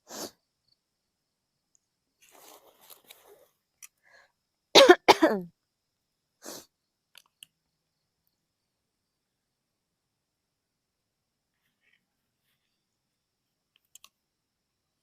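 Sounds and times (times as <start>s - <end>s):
woman coughing: 4.8s - 5.5s.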